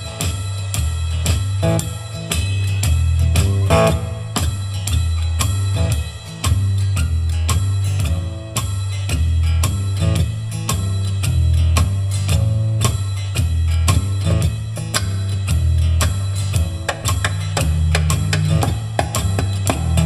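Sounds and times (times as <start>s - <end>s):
rock band playing: 0.0s - 20.0s
drum hits: 16.0s - 20.0s.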